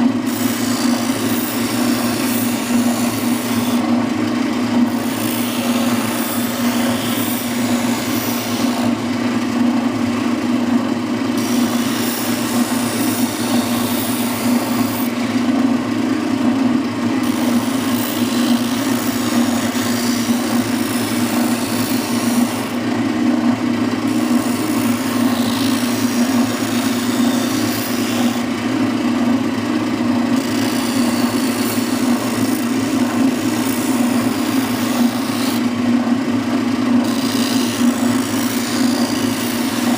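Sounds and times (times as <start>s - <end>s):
spindle sander humming: 0.0s - 39.9s.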